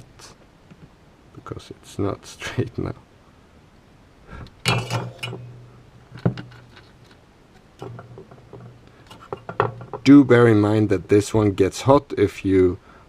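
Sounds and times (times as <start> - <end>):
small knocks and clicks: 4.7 - 10.2.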